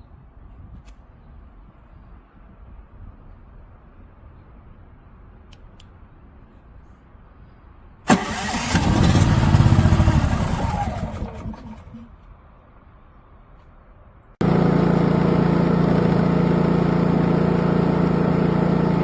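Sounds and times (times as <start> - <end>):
generator engine starting and running: 8.1 - 12.3, 14.4 - 19.0.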